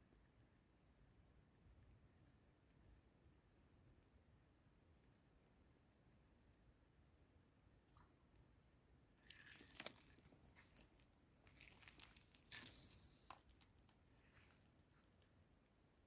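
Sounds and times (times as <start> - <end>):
faint rustles and clicks: 9.2 - 15.4.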